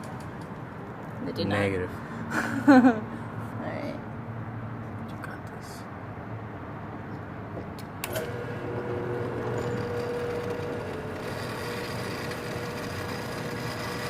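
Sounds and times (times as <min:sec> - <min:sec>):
drill press motor whining: 0:08.0 - 0:14.0.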